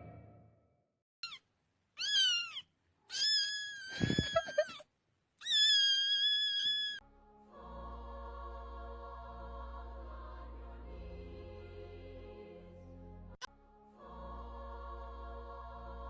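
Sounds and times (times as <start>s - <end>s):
cat meowing: 1.2s - 1.4s, 2.0s - 4.8s, 5.4s - 7.0s.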